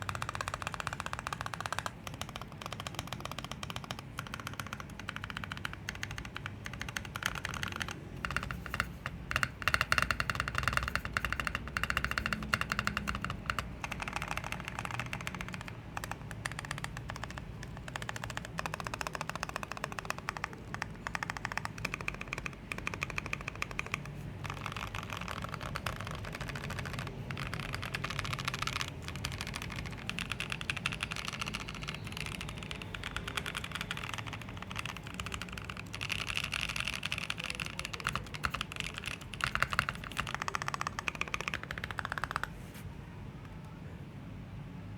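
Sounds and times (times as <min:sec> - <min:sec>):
fast mechanical keyboard typing: 0:00.0 - 0:42.9.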